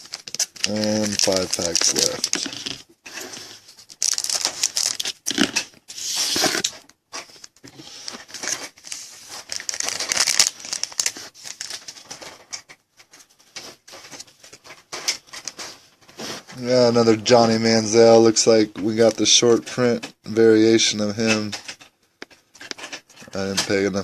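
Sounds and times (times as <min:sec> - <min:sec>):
wrapper tearing and crinkling: 0:00.0 - 0:12.6.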